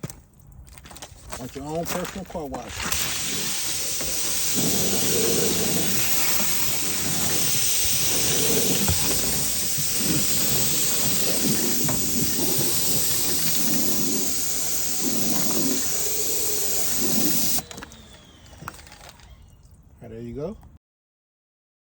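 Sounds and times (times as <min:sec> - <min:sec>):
pressure washer water jets hissing: 0:02.8 - 0:18.1.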